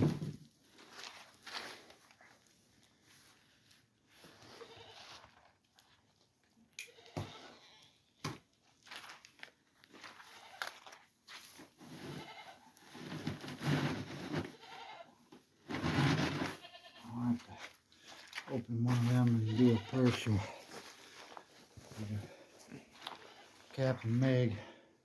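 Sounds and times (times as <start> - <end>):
goats bleating: 14.5 - 15.1, 16.3 - 17.6, 19.2 - 20.8.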